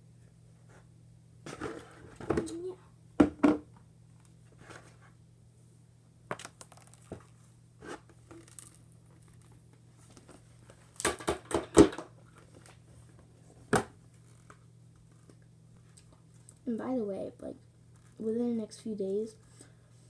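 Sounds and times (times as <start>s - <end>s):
slime crinkling and crackling: 6.4s - 7.4s.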